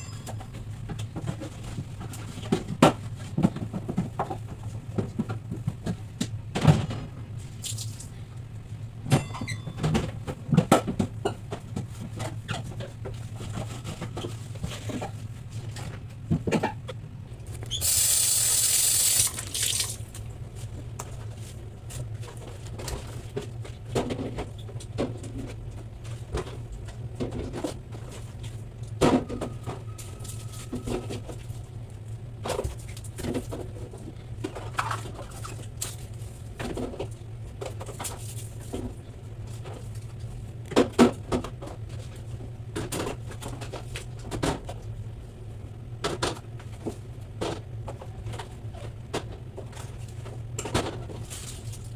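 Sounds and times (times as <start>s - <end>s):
knocks and clinks of handling: 0.0s - 0.8s
steady low hum: 0.0s - 34.8s
water running from a tap: 17.8s - 20.1s.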